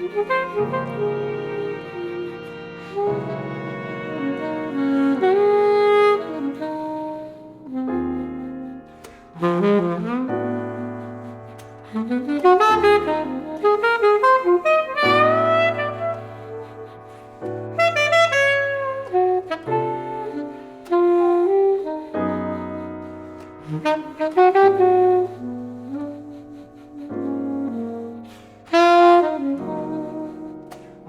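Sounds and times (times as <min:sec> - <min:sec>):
alto saxophone melody: 0:00.0 - 0:31.0
piano and strings chords: 0:00.0 - 0:31.0.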